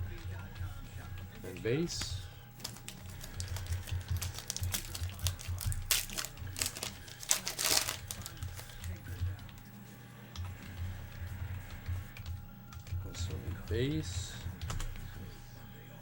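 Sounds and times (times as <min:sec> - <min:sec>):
cards being handled: 0:01.9 - 0:09.7
foil wrapper crinkling and tearing: 0:02.6 - 0:09.0.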